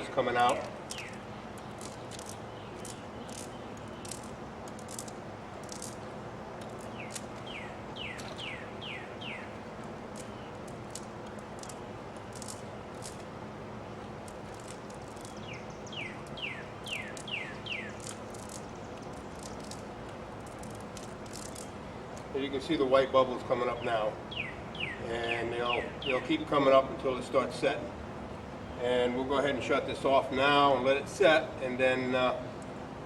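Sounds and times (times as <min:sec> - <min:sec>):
bird chirping: 0:00.8 - 0:06.0, 0:06.7 - 0:13.2, 0:14.4 - 0:19.9, 0:23.7 - 0:26.4.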